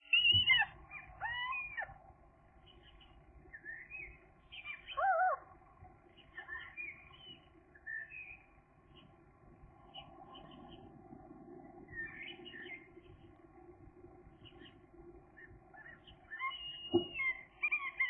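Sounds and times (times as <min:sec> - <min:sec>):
gull cries: 0:00.0 - 0:02.0, 0:04.6 - 0:05.5, 0:15.4 - 0:18.0.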